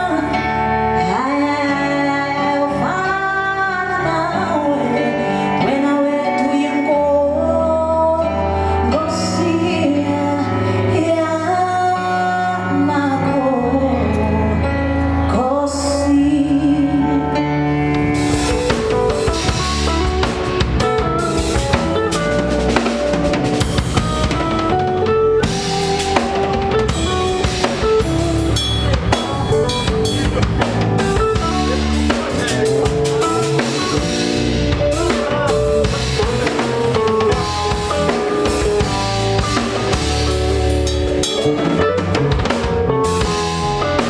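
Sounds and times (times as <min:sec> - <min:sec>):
band playing: 0:17.4 - 0:44.0
drum kit beat: 0:18.0 - 0:44.0.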